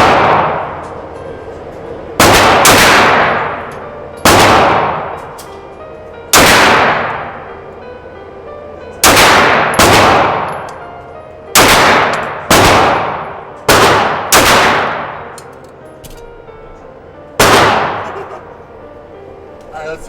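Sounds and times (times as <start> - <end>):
pistol shots: 0.0 - 0.8, 2.2 - 5.2, 6.3 - 7.3, 9.0 - 10.8, 11.5 - 15.3, 17.4 - 18.2.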